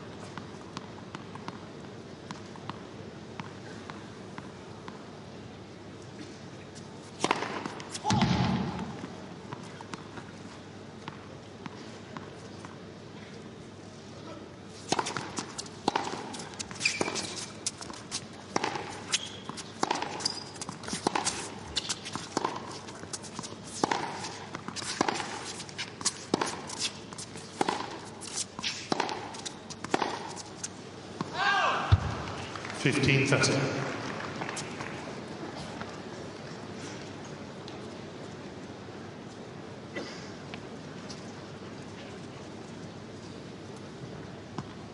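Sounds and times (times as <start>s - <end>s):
ball bouncing on court: 7.2s - 10.0s, 14.9s - 17.2s, 17.9s - 22.7s, 23.8s - 25.4s, 27.6s - 28.0s, 28.6s - 30.3s, 31.2s - 32.8s
tennis racket strikes: 14.8s - 30.6s.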